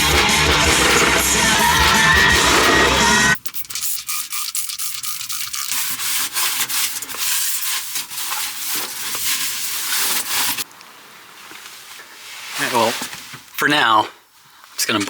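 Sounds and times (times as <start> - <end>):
rasping scraping and rubbing: 0.0 - 10.6.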